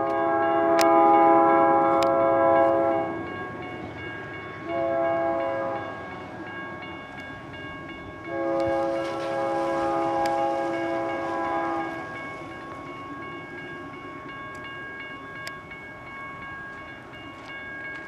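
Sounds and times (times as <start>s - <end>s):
locomotive air horn blasts: 0.0s - 3.1s, 4.7s - 5.9s, 8.3s - 12.2s
train rumble: 0.0s - 18.0s.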